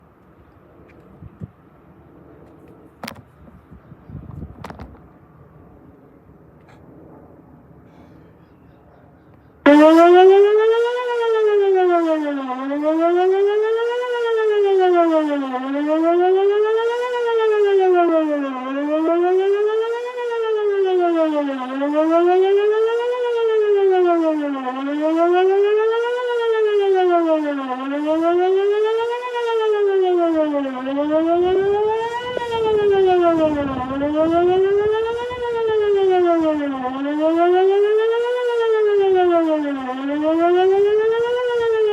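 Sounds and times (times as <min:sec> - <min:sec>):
wailing warning siren: 0:00.0 - 0:41.9.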